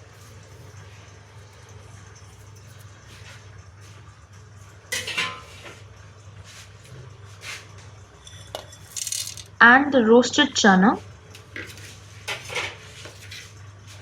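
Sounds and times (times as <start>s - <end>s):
utensils clinking against container: 8.2s - 9.5s.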